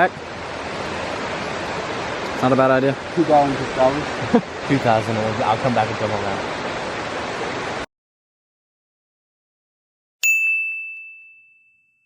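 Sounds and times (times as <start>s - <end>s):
rushing water: 0.0s - 7.9s
bright bell-like ding: 10.2s - 12.0s.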